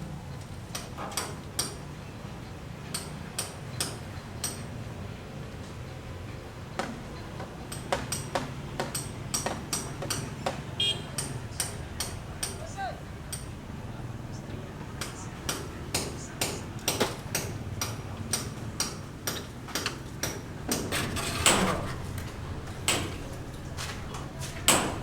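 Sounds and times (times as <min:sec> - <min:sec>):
sharp metallic taps and clinks: 0:15.5 - 0:25.0.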